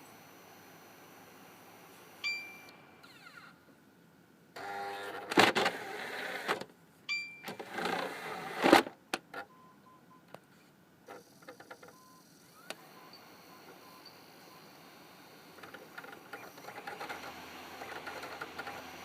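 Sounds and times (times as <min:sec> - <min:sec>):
disc drive whirring: 0:11.1 - 0:19.0.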